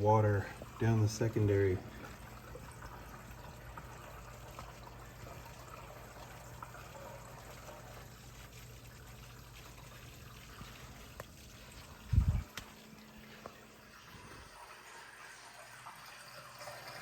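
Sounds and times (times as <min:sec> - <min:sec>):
water and air gurgling down drain: 0:09.9 - 0:12.6.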